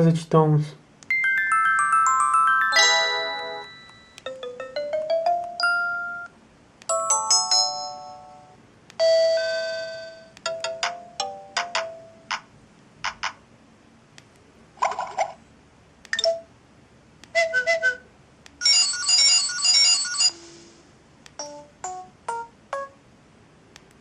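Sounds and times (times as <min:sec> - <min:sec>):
phone alert jingles: 0:01.2 - 0:06.3, 0:18.6 - 0:20.4.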